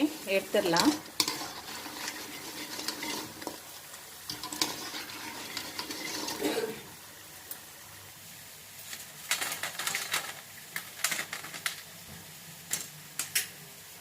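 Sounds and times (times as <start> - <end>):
spoon scraping frying pan: 0.0 - 7.0.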